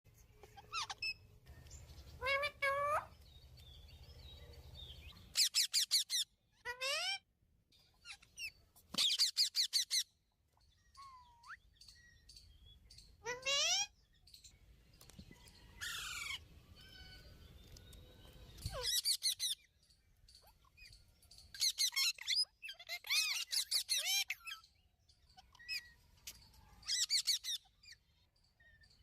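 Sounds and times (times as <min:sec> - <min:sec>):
parrot chirping and squawking: 0:00.3 - 0:01.3, 0:02.2 - 0:03.2, 0:05.1 - 0:07.2, 0:08.0 - 0:10.1, 0:13.2 - 0:14.0, 0:15.8 - 0:17.3, 0:18.5 - 0:19.7, 0:21.6 - 0:26.0, 0:26.8 - 0:28.0.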